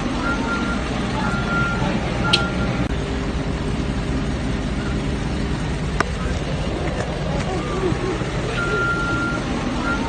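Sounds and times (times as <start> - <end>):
vehicle engine running: 0.0 - 10.0
reversing alarm beeping: 0.2 - 2.9, 8.6 - 10.0.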